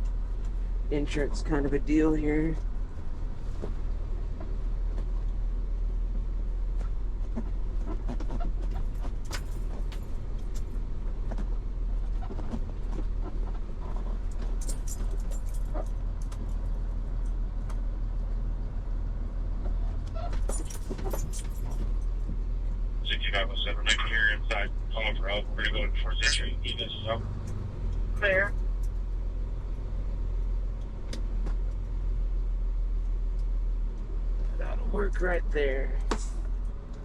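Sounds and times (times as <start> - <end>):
truck engine rumbling: 0.0 - 37.0
metallic jangling: 8.8 - 10.7, 13.9 - 16.8, 20.3 - 22.1.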